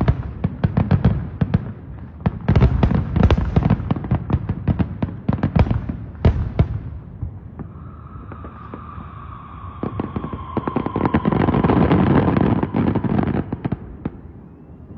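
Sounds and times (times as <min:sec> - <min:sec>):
fireworks bangs and pops: 0:00.0 - 0:07.7.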